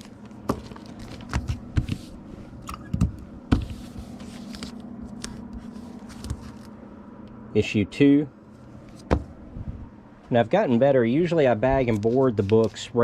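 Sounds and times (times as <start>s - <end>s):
plastic and card rustling: 0.0s - 2.2s, 3.5s - 6.8s, 11.7s - 13.0s
steady low hum: 0.0s - 13.0s.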